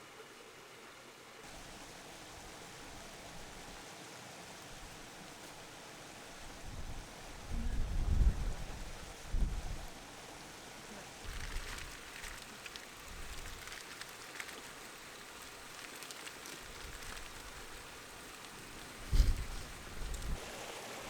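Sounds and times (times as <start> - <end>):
steady hiss: 0.0 - 21.0
wind buffeting microphone: 6.7 - 9.9, 19.0 - 20.4.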